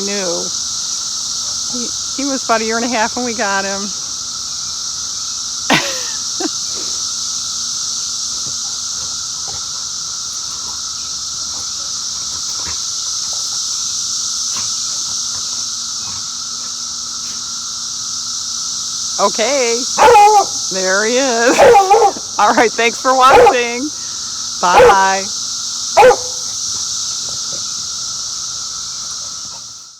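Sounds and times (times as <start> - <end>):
cicadas droning: 0.0 - 29.9.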